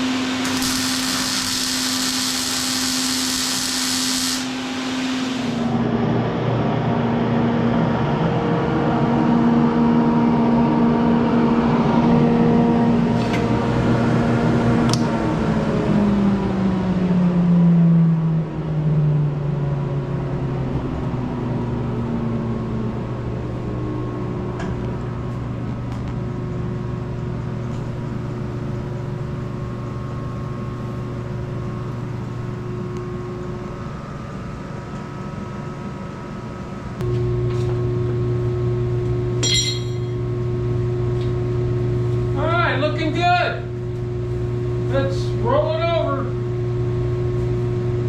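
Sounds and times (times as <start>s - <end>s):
electric fan motor humming: 0.0s - 16.8s, 20.5s - 48.0s
louder hum: 0.0s - 27.2s.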